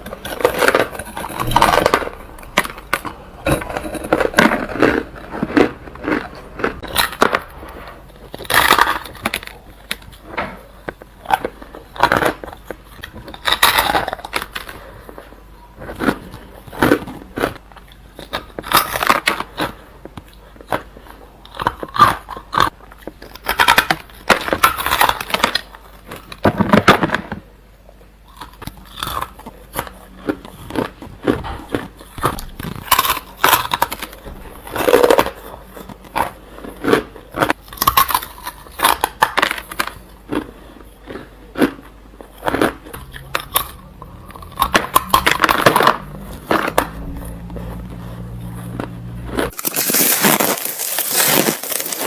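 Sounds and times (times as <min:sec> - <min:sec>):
ice cubes crunched by teeth: 0:49.5 - 0:52.0.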